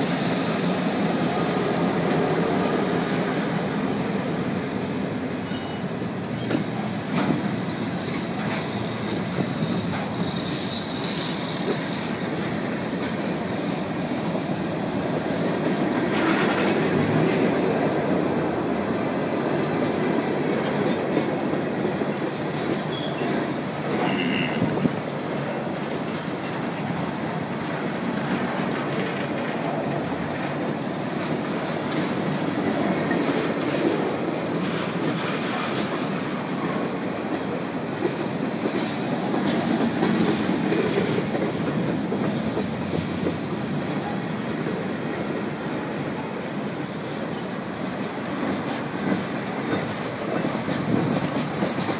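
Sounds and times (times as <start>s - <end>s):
train wheels clattering on rails: 0.0s - 51.9s
faint wheel squeal: 5.4s - 6.6s, 22.9s - 23.4s, 24.0s - 25.8s.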